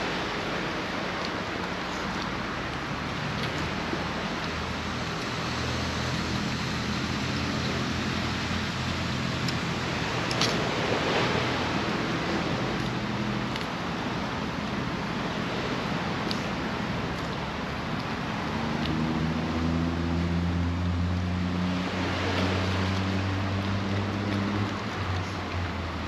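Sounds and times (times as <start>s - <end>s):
sea waves washing onto beach: 0.0s - 26.0s.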